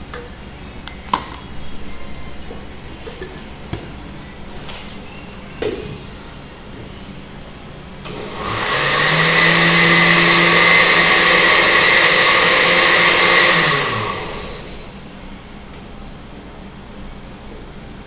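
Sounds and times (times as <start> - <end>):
electric blender motor: 8.1 - 14.9.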